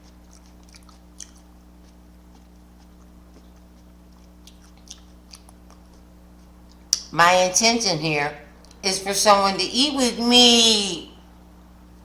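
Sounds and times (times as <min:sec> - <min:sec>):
faint chewing with mouth clicks: 0:00.0 - 0:07.1, 0:08.5 - 0:08.8
low electrical hum: 0:00.0 - 0:12.0.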